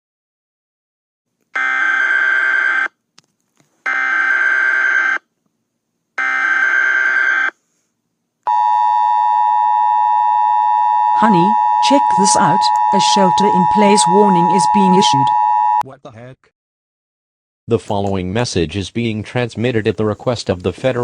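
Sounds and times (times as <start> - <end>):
two-tone attention signal: 8.5 - 15.8
data header bursts: 11.2 - 15.8.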